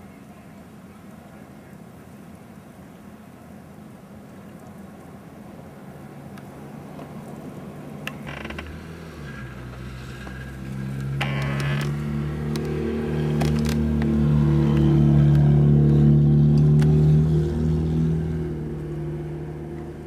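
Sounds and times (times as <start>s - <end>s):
car engine humming: 5.8s - 20.0s.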